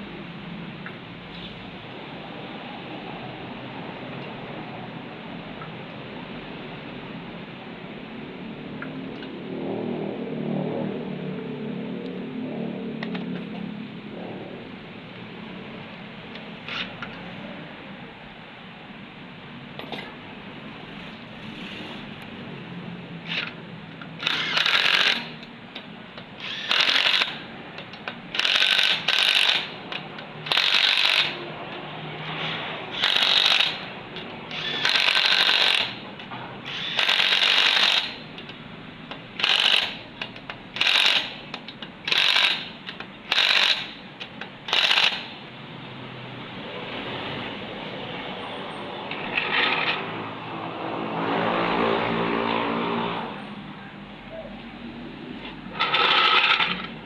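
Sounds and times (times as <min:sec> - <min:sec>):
power tool bursts rattling: 0:24.2 - 0:25.4, 0:26.4 - 0:27.4, 0:28.4 - 0:29.8, 0:30.5 - 0:31.4, 0:32.9 - 0:33.9, 0:34.5 - 0:36.0, 0:36.7 - 0:38.2, 0:40.8 - 0:41.4, 0:42.1 - 0:43.9, 0:44.7 - 0:45.3.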